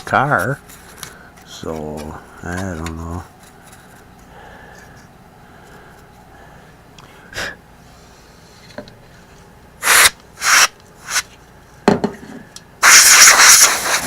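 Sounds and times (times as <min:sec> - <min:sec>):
compressed air spraying: 0:09.8 - 0:11.2, 0:12.8 - 0:14.0.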